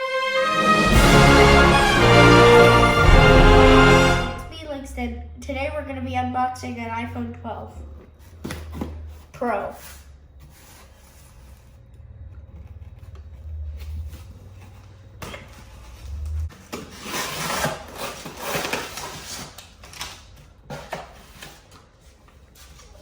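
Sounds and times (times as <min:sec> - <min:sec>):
cardboard packaging rustling: 0:13.7 - 0:23.0.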